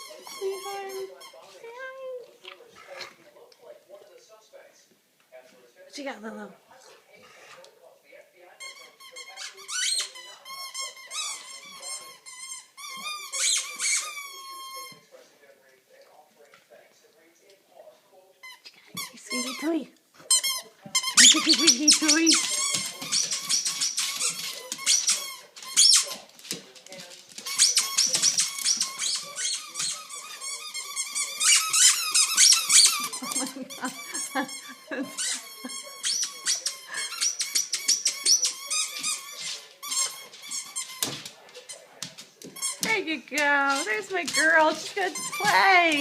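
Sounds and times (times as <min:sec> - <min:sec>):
squeaky dog toy squeaks: 0:00.0 - 0:01.4, 0:08.6 - 0:14.9, 0:18.5 - 0:26.2, 0:27.5 - 0:41.1, 0:42.6 - 0:42.9, 0:43.7 - 0:46.0.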